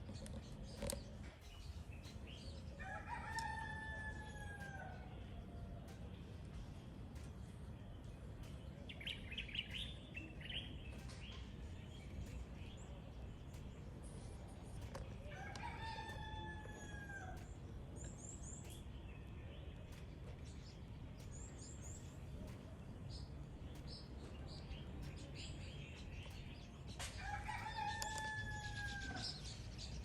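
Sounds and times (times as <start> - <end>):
low background noise: 0.0 - 30.0
small birds chirping: 0.0 - 30.0
rooster crowing: 2.8 - 5.3, 15.2 - 17.4, 27.2 - 29.4.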